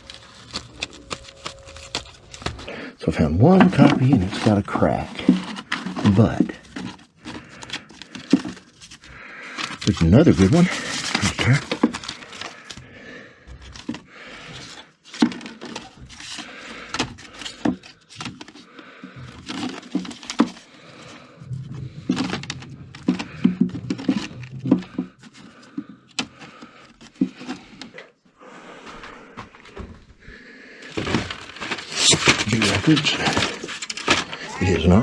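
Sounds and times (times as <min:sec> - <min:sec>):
records knocking and clacking: 0:00.0 - 0:12.8, 0:19.2 - 0:27.4
paper and cardboard rustling: 0:00.0 - 0:12.9, 0:13.5 - 0:28.0, 0:30.8 - 0:35.0.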